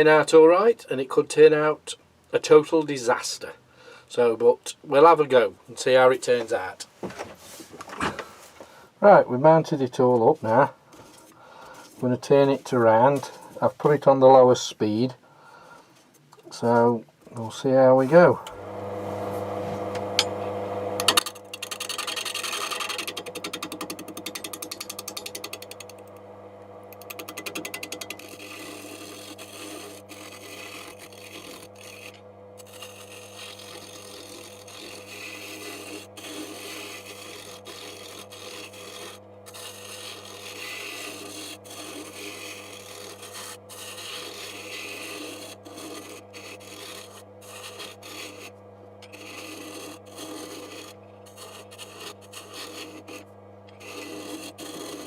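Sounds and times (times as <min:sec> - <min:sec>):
turning tool scraping wood: 0:09.5 - 0:14.6, 0:16.5 - 0:55.0
lathe motor hum: 0:18.2 - 0:55.0
rapid ticking of tool: 0:21.4 - 0:26.2, 0:26.9 - 0:48.4.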